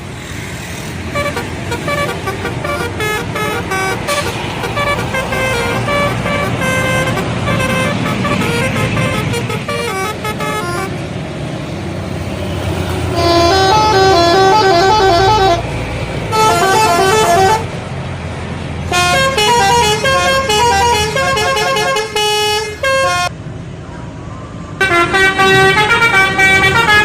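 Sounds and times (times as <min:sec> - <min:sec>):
bus engine and traffic rumble: 0:00.0 - 0:27.0
bus musical horn: 0:01.1 - 0:11.1, 0:13.0 - 0:17.8, 0:18.9 - 0:23.3, 0:24.8 - 0:27.0.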